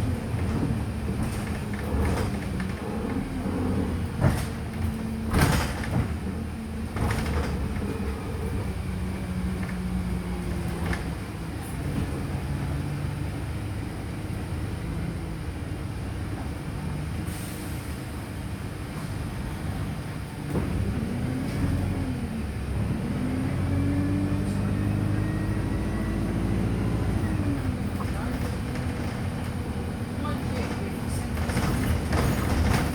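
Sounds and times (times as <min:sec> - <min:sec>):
bus diesel engine droning: 0:00.0 - 0:32.9
sharp knocks and rattles: 0:30.6 - 0:32.9.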